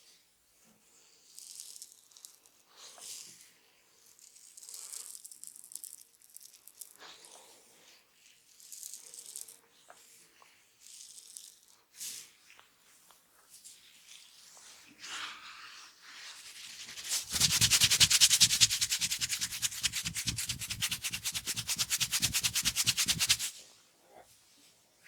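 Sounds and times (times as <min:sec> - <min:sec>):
fingers scratching through hair: 0:16.4 - 0:23.5.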